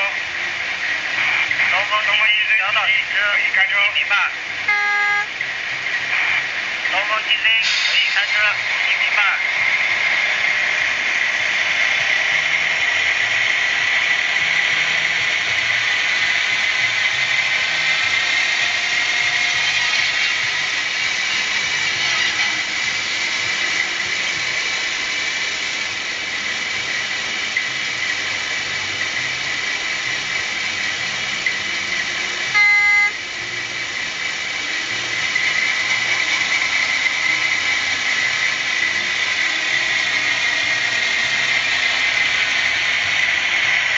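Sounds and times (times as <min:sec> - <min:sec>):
diesel engine running: 0:00.0 - 0:43.9
locomotive horn blast: 0:04.7 - 0:05.4, 0:32.5 - 0:33.2.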